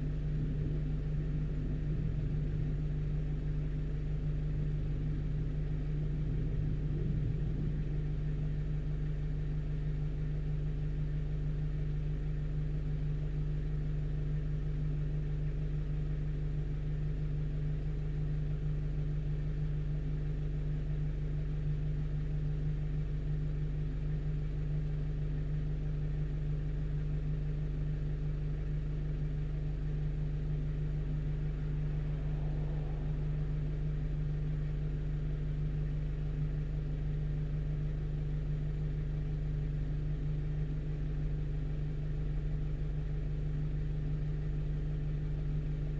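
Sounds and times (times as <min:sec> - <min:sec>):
truck engine humming: 0:30.3 - 0:35.2.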